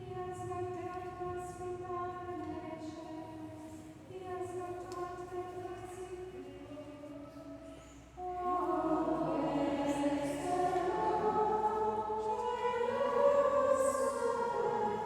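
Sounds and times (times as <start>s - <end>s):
choir singing chant-like melody: 8.2s - 15.0s.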